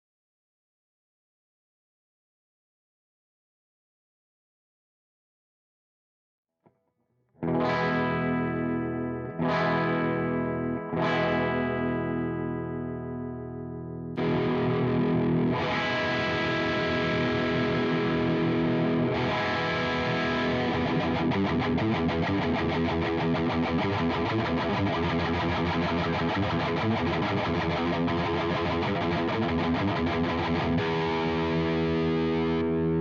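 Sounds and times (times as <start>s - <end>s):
distorted electric guitar chords: 7.4s - 33.0s
fast distorted guitar riff: 7.4s - 33.0s.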